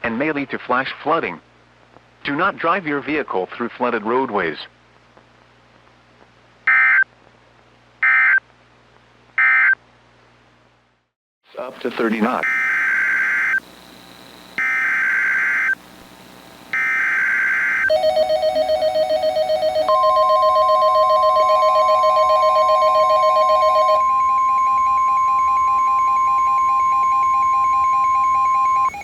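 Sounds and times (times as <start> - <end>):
harsh screeching data bursts: 11.6 - 17.9.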